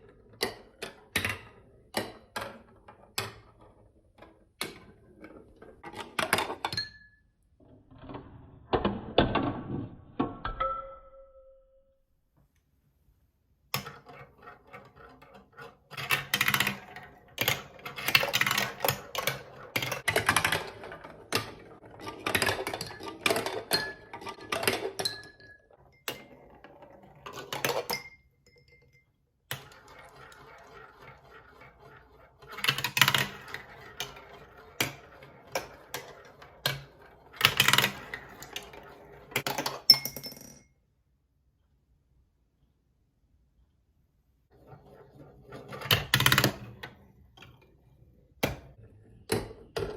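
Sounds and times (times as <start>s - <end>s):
marbles rattling down plastic track: 29.5s - 40.5s.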